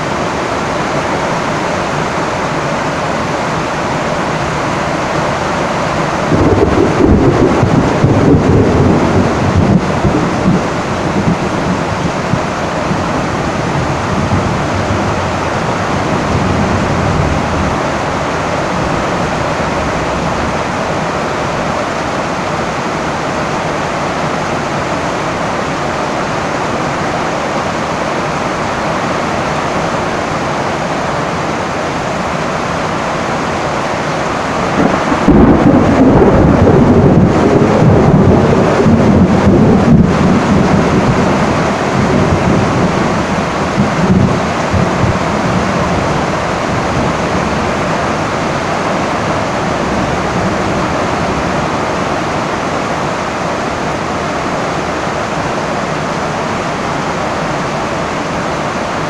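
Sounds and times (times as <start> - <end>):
heavy rain on a tin roof: 0.0 - 59.0
thunderclap rumbling: 6.2 - 21.0, 34.6 - 52.6.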